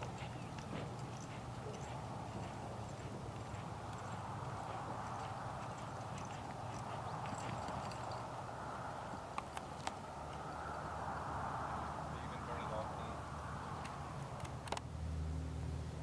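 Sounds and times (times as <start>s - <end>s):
horse hoofbeats: 0.0s - 11.0s.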